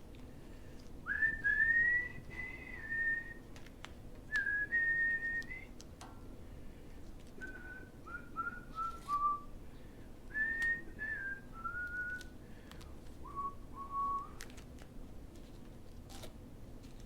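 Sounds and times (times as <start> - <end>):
man whistling a tune: 1.1 - 3.4, 4.3 - 5.8, 7.4 - 9.5, 10.3 - 12.3, 13.2 - 14.4.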